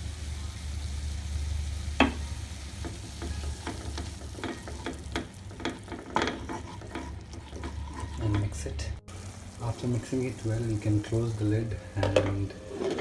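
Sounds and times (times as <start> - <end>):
food sizzling: 0.0 - 13.0
spatula scraping in a frying pan: 2.8 - 8.9, 10.4 - 13.0.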